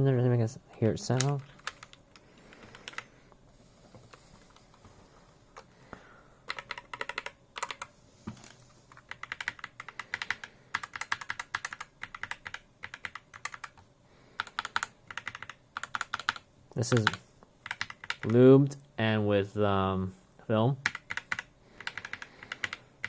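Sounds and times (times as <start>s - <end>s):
mechanical keyboard typing: 1.1s - 3.1s, 6.5s - 13.8s, 14.4s - 18.4s, 20.8s - 22.8s.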